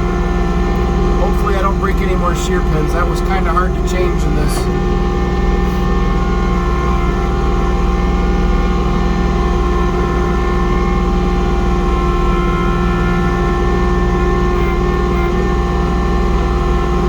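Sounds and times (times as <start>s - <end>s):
diesel tractor engine running: 0.0s - 17.0s
snowblower mechanical whine: 0.0s - 17.0s.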